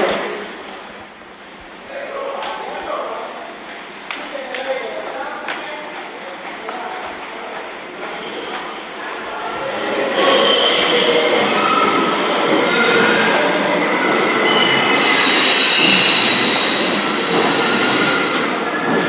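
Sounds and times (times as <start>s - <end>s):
train wheels squealing on rails: 2.7s - 3.9s, 6.8s - 19.0s
steady rolling noise: 7.6s - 19.0s.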